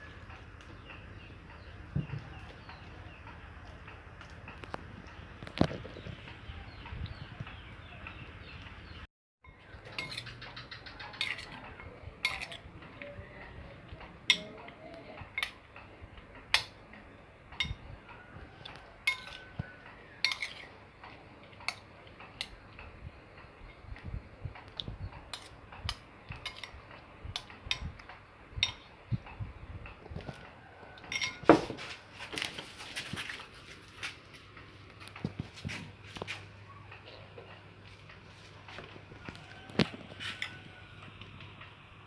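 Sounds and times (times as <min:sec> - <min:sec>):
utensil clinking against bowl: 0:09.5 - 0:13.1, 0:14.2 - 0:15.9, 0:19.0 - 0:22.6, 0:25.3 - 0:28.9, 0:31.0 - 0:31.7.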